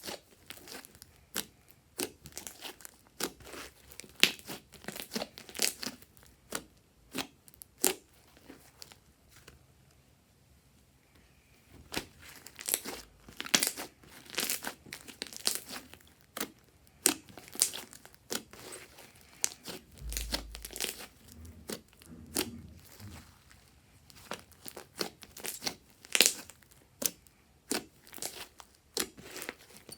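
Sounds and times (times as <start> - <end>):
slime crackling and popping: 11.9 - 23.2, 24.1 - 29.9.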